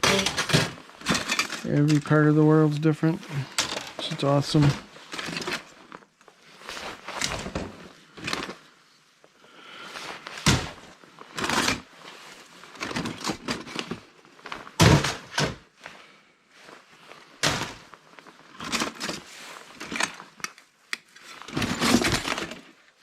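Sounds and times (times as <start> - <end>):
laptop parts knocking onto piles: 14.8 - 15.6, 21.5 - 22.6.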